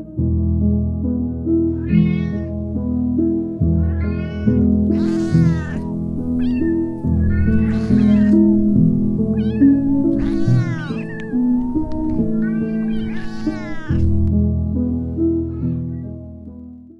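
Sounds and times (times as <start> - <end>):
background music: 0.0 - 16.9
cat meowing: 1.7 - 2.6, 3.8 - 8.7, 9.3 - 14.3, 15.4 - 16.1.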